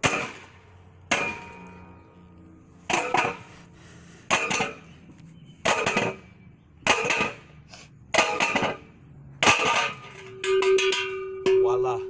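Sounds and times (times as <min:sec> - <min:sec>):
metal pole clanging on ground: 0:01.1 - 0:02.2, 0:02.9 - 0:03.5, 0:04.3 - 0:04.9, 0:05.6 - 0:07.5, 0:08.1 - 0:12.0.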